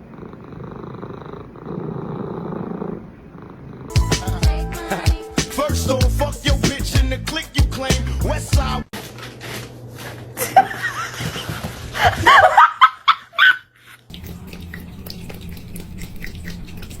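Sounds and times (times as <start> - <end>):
person laughing and snickering: 4.8 - 6.0.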